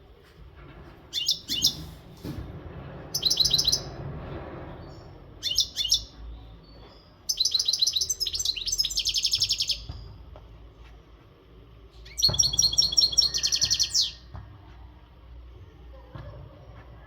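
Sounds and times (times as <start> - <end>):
goldfinch twittering song: 1.1 - 1.9, 3.2 - 4.0, 5.4 - 10.1, 12.0 - 14.3.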